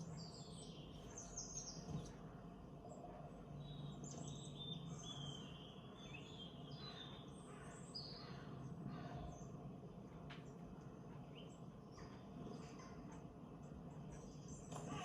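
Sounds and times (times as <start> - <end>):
faint low hum: 0.0 - 15.0
small birds chirping: 0.0 - 15.0.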